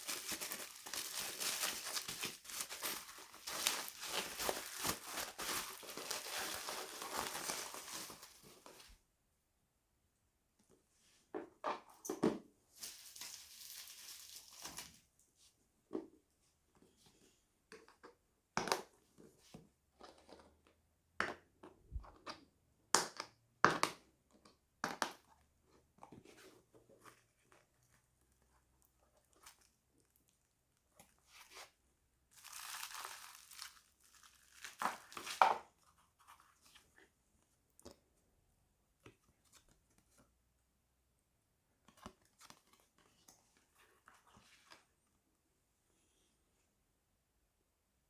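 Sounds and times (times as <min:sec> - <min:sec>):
wrapping crumpling: 0:00.0 - 0:08.6, 0:12.8 - 0:15.0, 0:32.3 - 0:35.4
packaging crinkling and scraping: 0:00.0 - 0:08.8, 0:32.3 - 0:35.5.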